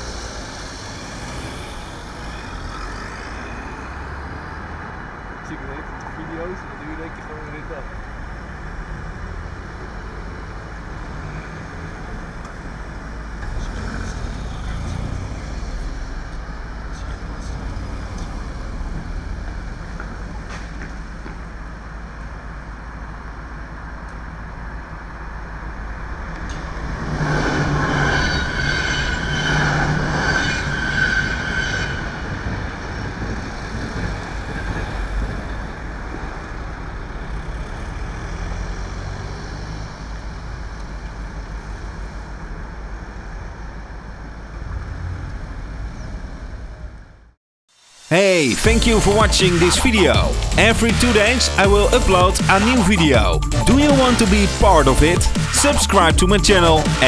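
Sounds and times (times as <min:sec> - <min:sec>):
low rumble and road noise: 0:00.0 - 0:57.0
train passing: 0:25.6 - 0:37.6.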